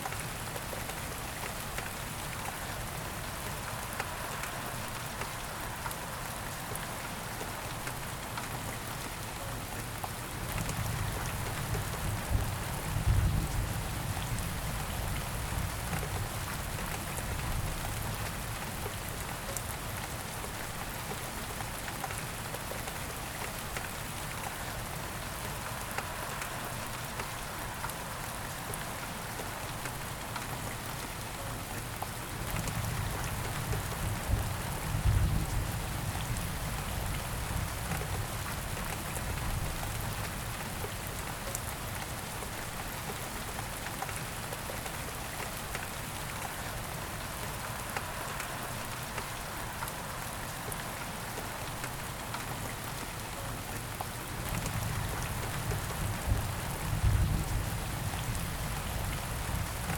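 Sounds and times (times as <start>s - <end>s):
steady rain: 0.0s - 59.9s.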